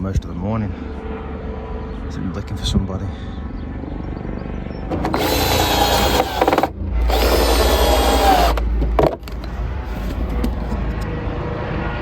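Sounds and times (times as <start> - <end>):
power drill whining: 4.9 - 10.6.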